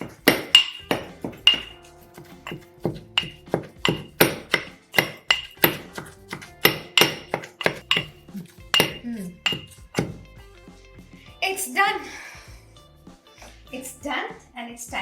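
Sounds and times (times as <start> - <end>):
pestle pounding in mortar: 0.0 - 10.3.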